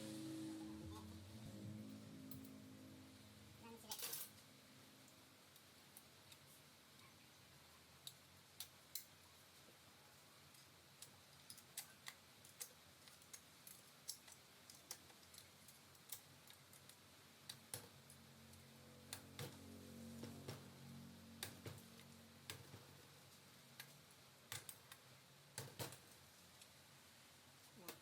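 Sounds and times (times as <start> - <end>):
small parts clicking: 10.5 - 19.5, 23.8 - 26.7.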